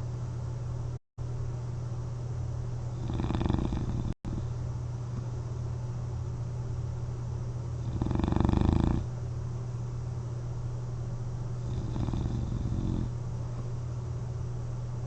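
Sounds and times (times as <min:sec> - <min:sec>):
steady low hum: 0:00.0 - 0:15.0
person snoring: 0:03.0 - 0:04.2, 0:07.8 - 0:09.1, 0:11.6 - 0:13.1.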